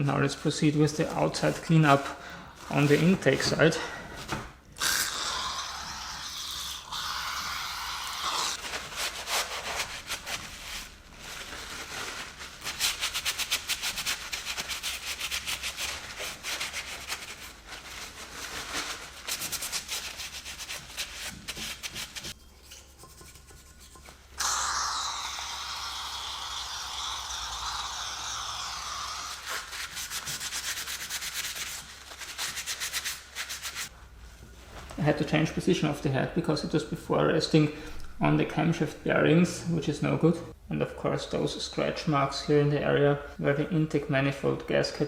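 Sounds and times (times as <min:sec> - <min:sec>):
hand scrubbing metal surface: 0:19.4 - 0:24.4.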